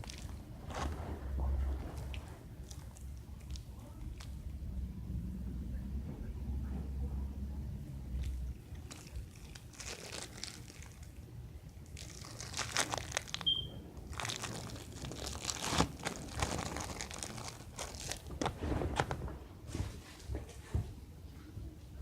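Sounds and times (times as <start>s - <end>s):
packaging crinkling: 0.0s - 4.3s, 8.2s - 19.4s
short high beep: 13.5s - 13.8s.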